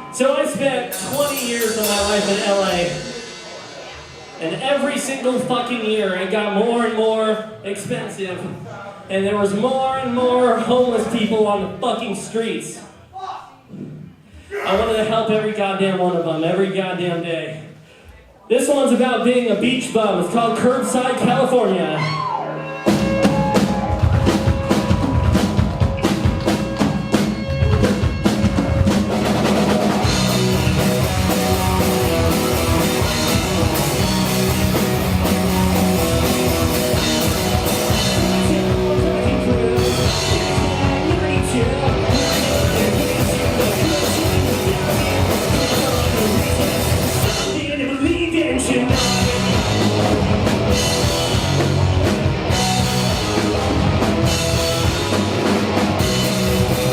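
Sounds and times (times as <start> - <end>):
live rock band playing: 0.0 - 6.1, 20.2 - 56.9
drum kit: 0.0 - 8.6, 19.6 - 56.9
electric guitar: 22.0 - 47.6, 48.8 - 56.9.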